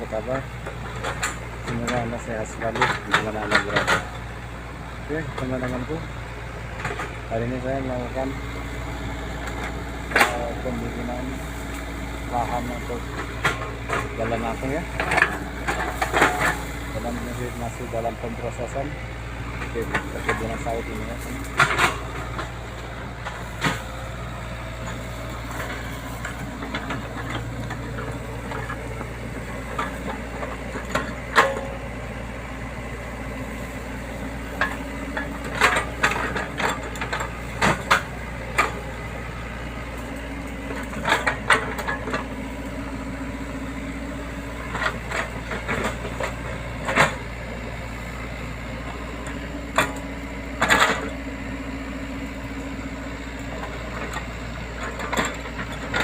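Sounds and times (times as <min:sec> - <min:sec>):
excavator diesel engine running: 0:00.0 - 0:56.0
knocks and clatters: 0:02.7 - 0:04.2, 0:11.7 - 0:17.8, 0:19.6 - 0:22.6, 0:23.2 - 0:24.0, 0:40.4 - 0:42.4.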